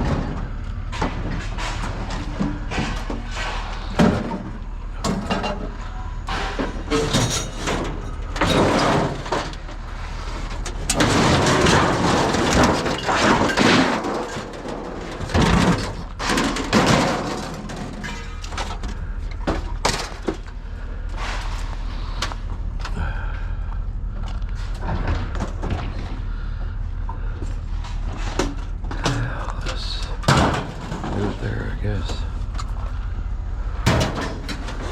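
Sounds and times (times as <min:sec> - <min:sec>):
scrap clattering and scraping: 0:00.0 - 0:34.9
steady low hum: 0:00.0 - 0:34.9.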